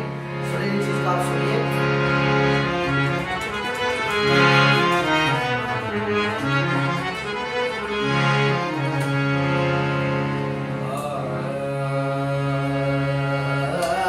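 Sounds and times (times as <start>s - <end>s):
harmonium melody: 0.0s - 14.0s.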